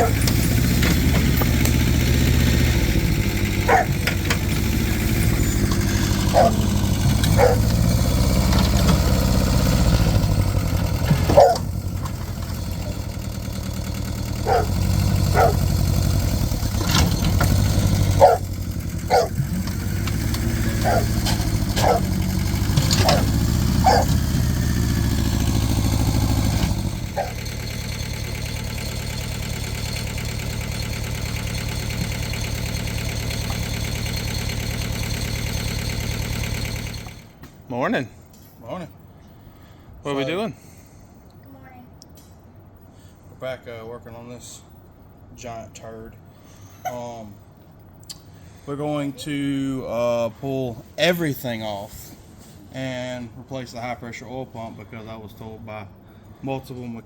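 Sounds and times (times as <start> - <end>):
dog barking: 0.0 - 0.2, 3.6 - 4.0, 6.3 - 6.7, 7.3 - 7.7, 11.3 - 11.7, 14.4 - 15.7, 18.2 - 18.5, 19.1 - 19.4, 20.7 - 21.2, 21.8 - 22.2, 23.0 - 24.2, 27.1 - 27.4
engine idling: 0.0 - 37.4.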